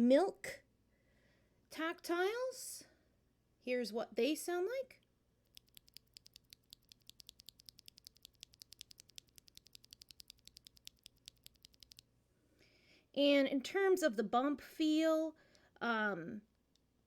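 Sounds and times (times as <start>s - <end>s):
mechanical keyboard key clicks: 5.6s - 12.0s.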